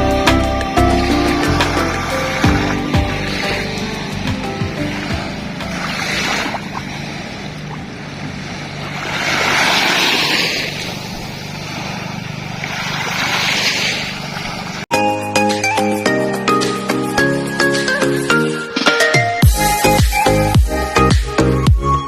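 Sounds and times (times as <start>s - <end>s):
steady low hum: 0.0s - 13.1s
sea waves washing onto beach: 0.0s - 14.9s.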